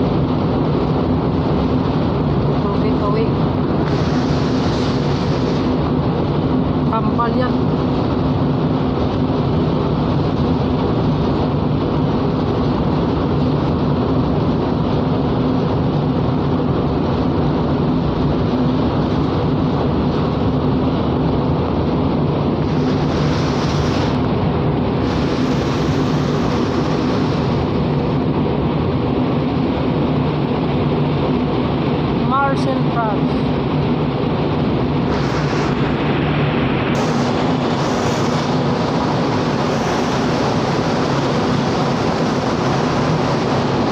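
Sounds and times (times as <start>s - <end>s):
ship engine drone: 0.0s - 43.9s
wind on microphone: 0.0s - 43.9s
bright hiss: 36.9s - 40.6s.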